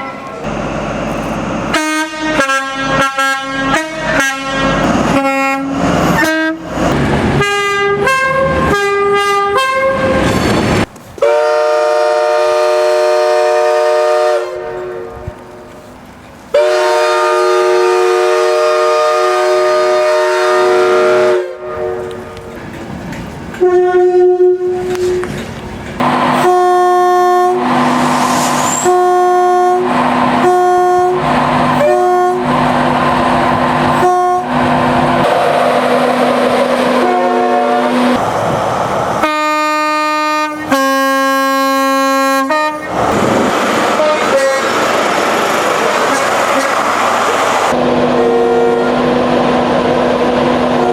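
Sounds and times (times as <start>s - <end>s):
train horn blasts: 1.7s - 6.7s, 7.4s - 10.2s, 11.2s - 15.7s, 16.5s - 22.6s, 23.6s - 25.3s, 26.0s - 28.0s, 28.6s - 32.5s, 33.8s - 35.3s, 35.9s - 38.2s, 39.2s - 43.0s, 43.9s - 44.8s, 47.7s - 49.5s, 50.5s - 50.9s.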